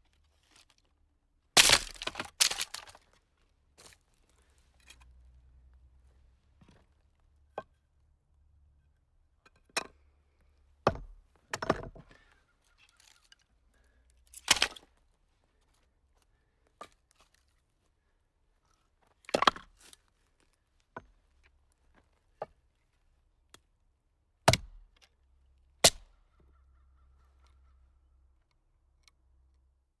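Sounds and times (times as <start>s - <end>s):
axe chopping firewood: 1.6s - 3.0s, 14.4s - 14.8s, 24.5s - 24.8s, 25.8s - 26.1s.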